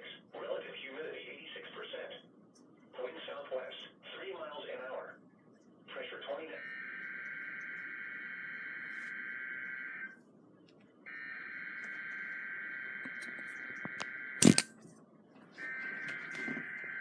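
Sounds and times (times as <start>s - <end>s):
sharp loud click: 14.4s - 14.7s.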